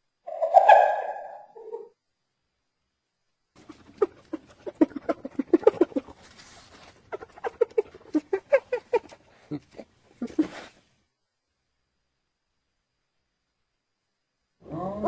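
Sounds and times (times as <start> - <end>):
hyena giggling: 3.6 - 10.9.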